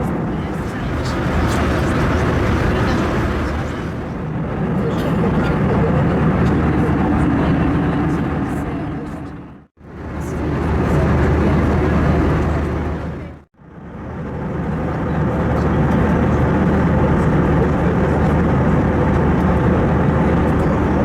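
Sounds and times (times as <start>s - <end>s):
airplane cabin engine and airflow: 0.0s - 21.0s
low hum: 0.3s - 4.3s.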